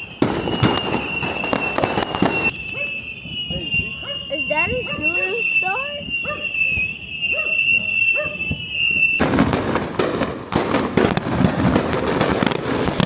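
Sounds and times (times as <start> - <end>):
voices: 0.0 - 9.7
firework crackling pops: 0.0 - 13.0
firework whistle: 0.0 - 13.0.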